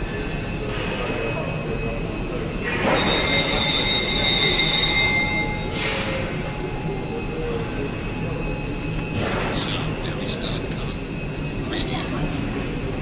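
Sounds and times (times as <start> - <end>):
machinery rumble: 6.1 - 13.0.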